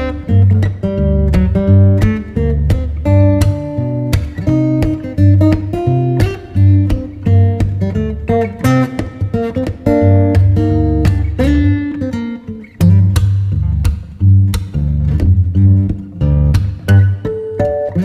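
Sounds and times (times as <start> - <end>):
acoustic guitar picking and strumming: 0.0 - 18.0
bass line: 12.8 - 17.2.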